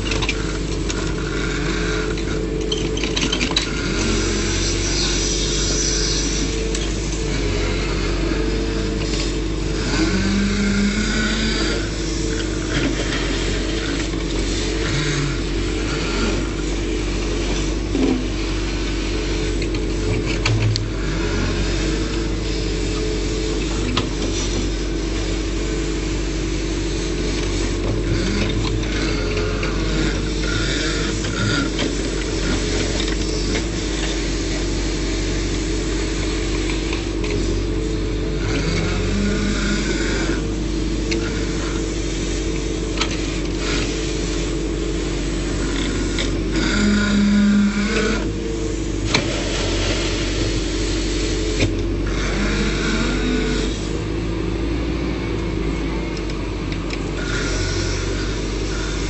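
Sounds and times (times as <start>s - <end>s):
diesel engine running: 0.0s - 59.0s
short whines: 45.8s - 48.4s.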